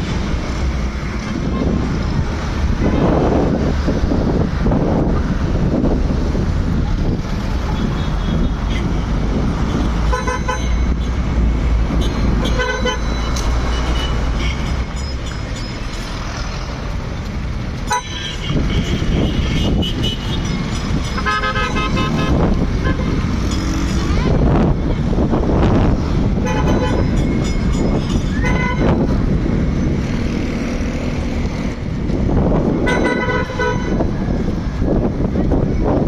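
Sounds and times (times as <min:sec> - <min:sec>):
road traffic rumble: 0:00.0 - 0:36.0
car horns beeping: 0:10.0 - 0:11.2, 0:11.8 - 0:15.1, 0:17.8 - 0:24.5, 0:26.4 - 0:29.2, 0:32.8 - 0:34.1.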